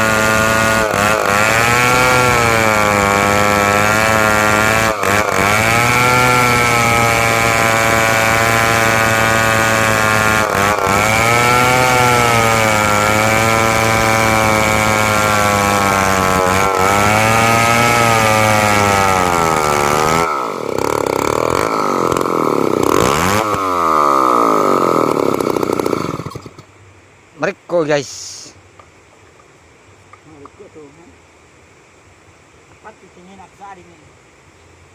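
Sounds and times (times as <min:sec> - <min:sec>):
chainsaw cutting wood: 0:00.0 - 0:26.7.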